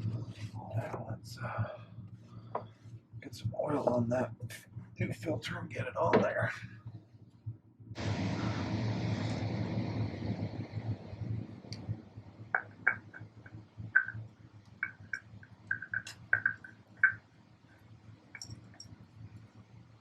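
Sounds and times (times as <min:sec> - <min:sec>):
low steady hum: 0:00.0 - 0:20.0
rushing noise: 0:08.0 - 0:14.2.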